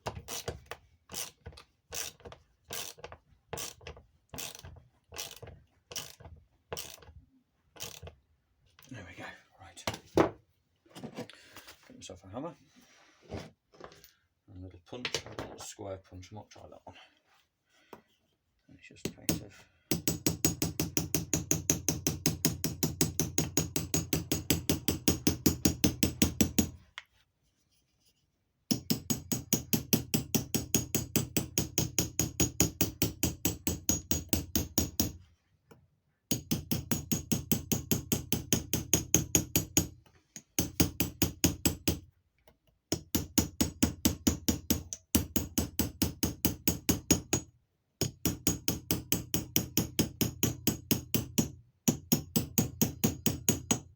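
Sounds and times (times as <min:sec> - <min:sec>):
hammer tapping metal punch: 0:42.9 - 0:53.9.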